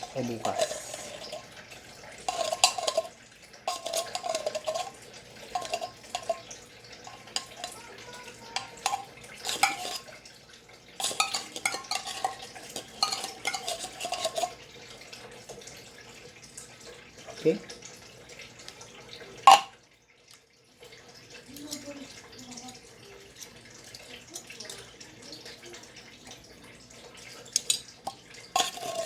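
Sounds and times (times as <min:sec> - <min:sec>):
metal spoon scraping a dish: 0:00.0 - 0:01.6, 0:02.2 - 0:10.2, 0:11.0 - 0:14.6, 0:27.6 - 0:29.0.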